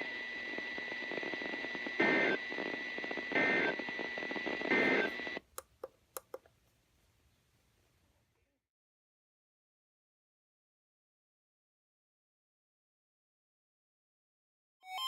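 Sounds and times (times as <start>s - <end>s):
radio hiss: 0.0s - 5.4s
faint steady whine: 0.0s - 5.8s
sharp clicks: 2.6s - 6.5s.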